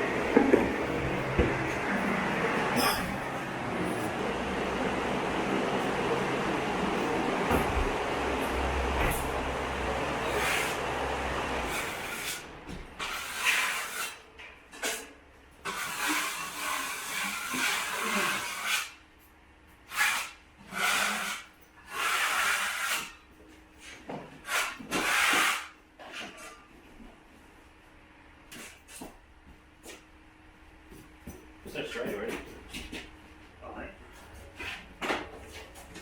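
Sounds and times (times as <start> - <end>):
drywall tool scraping compound: 10.2 - 10.9, 11.6 - 14.2, 14.8 - 19.0, 19.9 - 23.2, 23.8 - 26.7.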